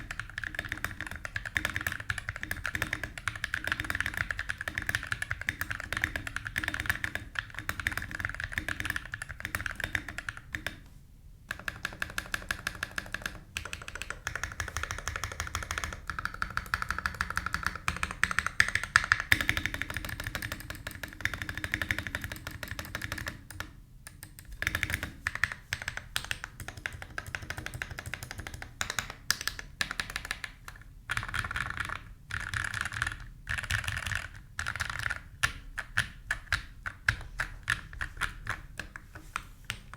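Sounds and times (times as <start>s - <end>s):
mechanical keyboard typing: 0.0s - 10.8s, 11.5s - 39.1s.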